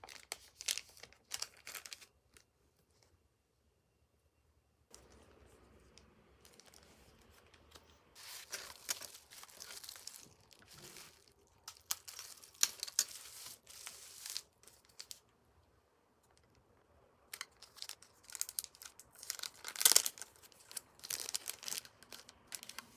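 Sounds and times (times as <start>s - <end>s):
packaging crinkling and tearing: 0.0s - 2.4s, 6.4s - 15.2s, 17.3s - 22.9s.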